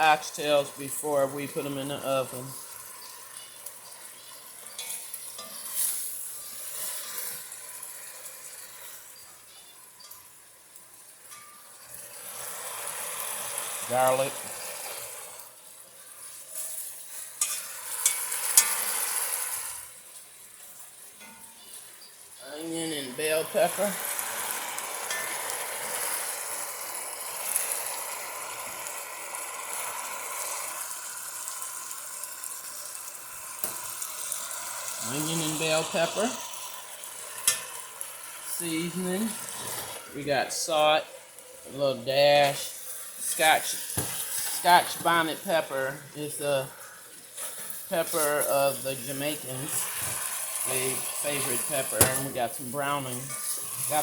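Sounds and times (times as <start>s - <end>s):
meat sizzling in hot fat: 0.0s - 54.0s.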